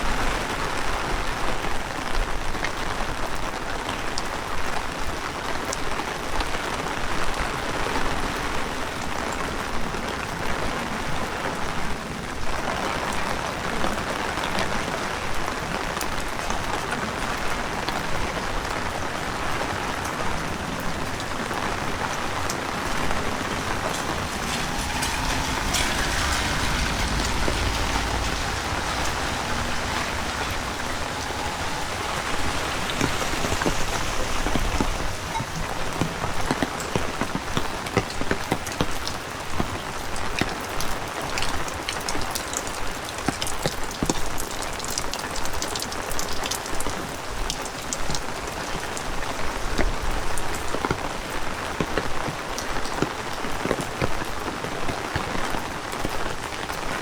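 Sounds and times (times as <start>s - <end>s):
heavy rain pattering: 0.0s - 57.0s
close rain drop hits: 14.0s - 57.0s
low rumble: 21.9s - 36.5s.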